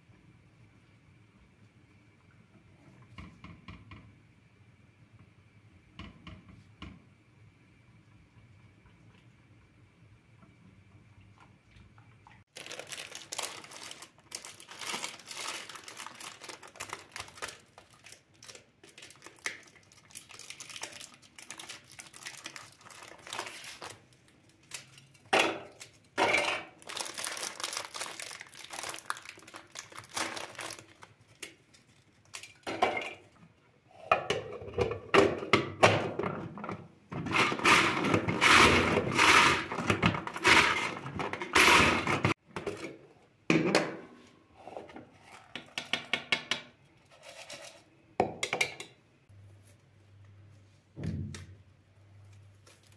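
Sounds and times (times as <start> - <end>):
crinkling and rustling: 12.1 - 33.5, 52.1 - 52.9.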